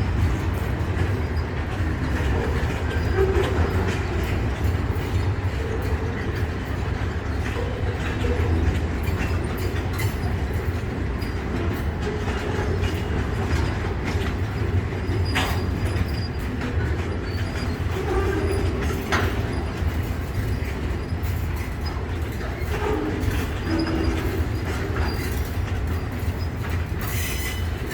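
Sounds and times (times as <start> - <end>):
freight train rumbling on track: 0.0 - 27.9
wheels clicking over rail joints: 0.0 - 27.9.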